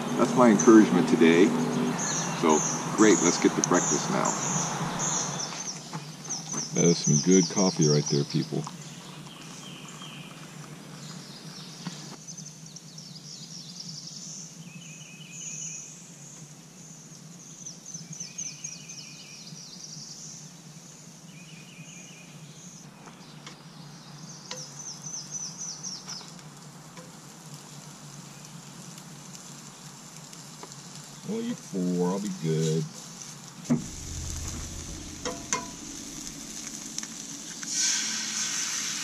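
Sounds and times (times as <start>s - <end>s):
songbirds singing: 0.0s - 26.4s
steady low hum: 33.7s - 38.3s.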